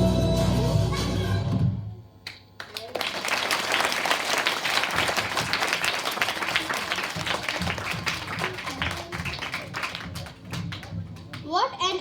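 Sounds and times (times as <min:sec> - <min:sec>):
audience applauding: 0:02.6 - 0:11.4.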